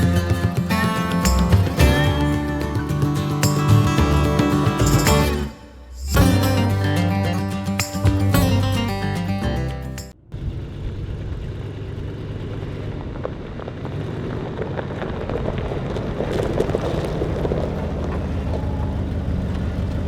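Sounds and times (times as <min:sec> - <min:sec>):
music: 0:00.0 - 0:10.2
vehicle engine running: 0:00.0 - 0:20.0.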